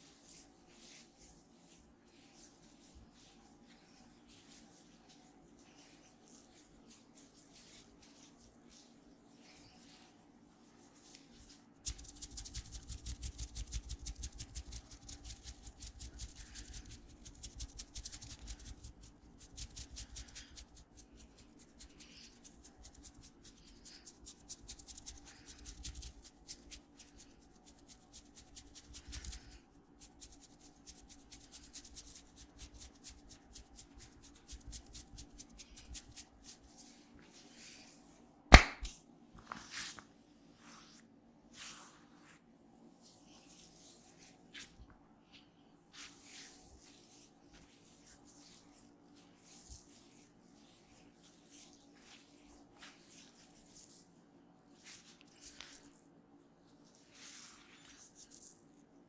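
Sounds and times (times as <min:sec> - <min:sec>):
loud sharp smack: 0:38.5 - 0:38.9
hands tapping and slapping head: 0:38.5 - 0:39.0.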